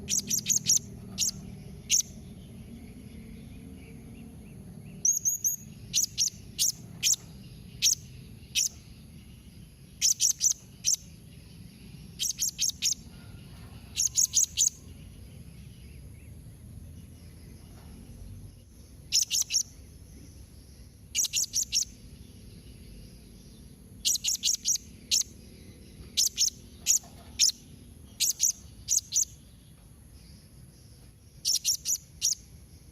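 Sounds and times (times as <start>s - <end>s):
parrot chirping: 0.0s - 2.2s, 5.0s - 8.9s, 10.0s - 11.1s, 12.2s - 13.1s, 19.1s - 19.8s, 21.1s - 22.0s, 24.0s - 25.4s, 26.1s - 29.4s, 31.4s - 32.4s.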